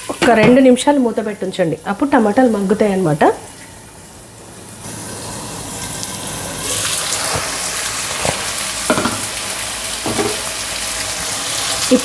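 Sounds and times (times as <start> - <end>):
vegetables sizzling in hot oil: 0.0 - 12.0
utensil knocking against pan: 8.9 - 9.3.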